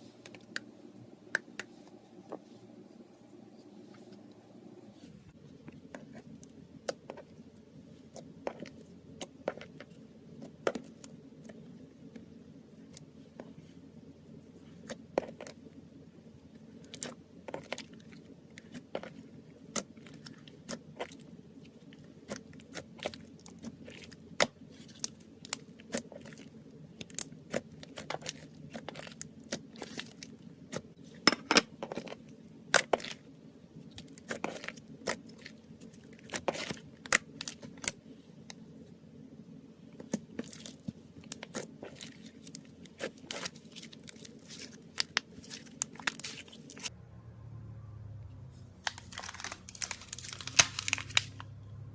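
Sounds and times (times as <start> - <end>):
low hum: 37.0 - 51.9.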